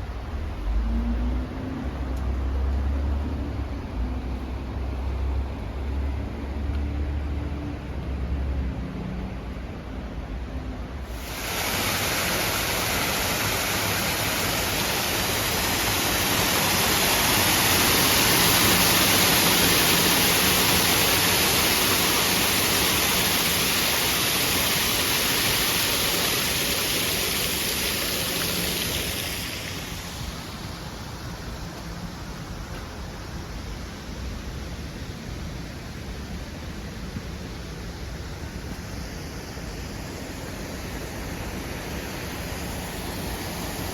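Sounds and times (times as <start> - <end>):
water rushing over a cascade: 11.0 - 43.9.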